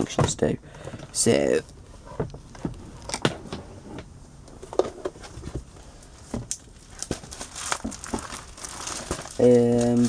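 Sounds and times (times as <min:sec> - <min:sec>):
papers rustling in folder: 0:04.6 - 0:10.0.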